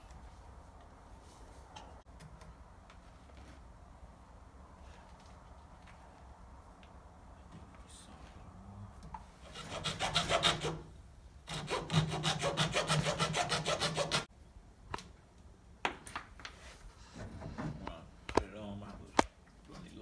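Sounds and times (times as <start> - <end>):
saw cutting through a pipe: 9.5 - 10.9, 11.5 - 14.3.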